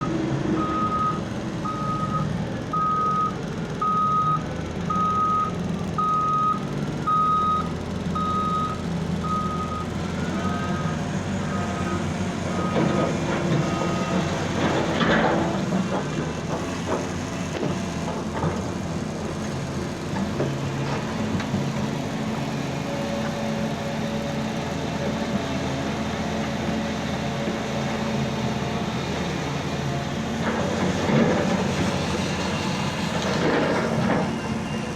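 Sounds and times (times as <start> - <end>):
diesel engine rumble: 0.0 - 34.9
reversing alarm beeping: 0.6 - 10.9, 11.5 - 13.0.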